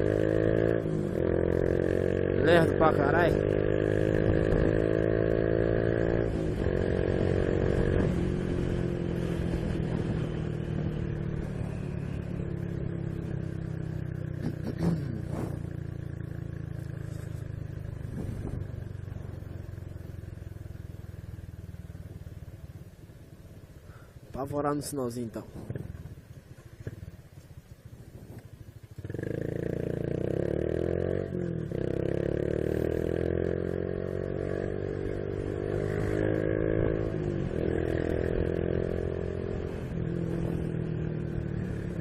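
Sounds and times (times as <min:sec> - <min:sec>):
motorcycle engine running: 0:00.0 - 0:42.0.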